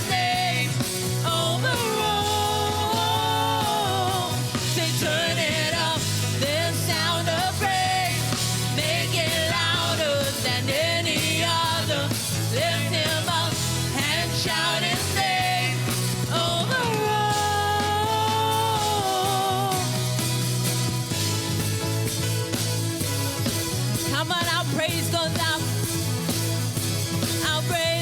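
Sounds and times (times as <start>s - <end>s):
person singing: 0.0s - 20.2s
band with bass line: 0.0s - 28.0s.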